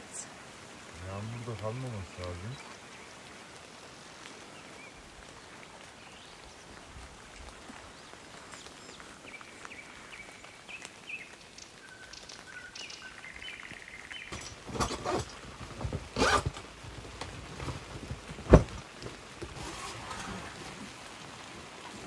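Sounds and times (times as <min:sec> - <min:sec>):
rain hiss: 0:00.0 - 0:22.0
birds chirping and calling: 0:08.5 - 0:15.4.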